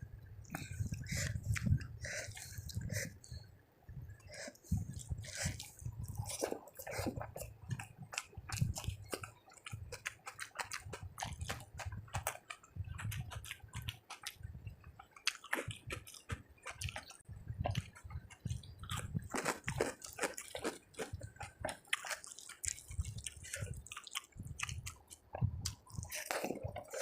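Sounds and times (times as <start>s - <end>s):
close chewing with mouth smacks: 0.4s - 3.4s, 4.2s - 27.0s.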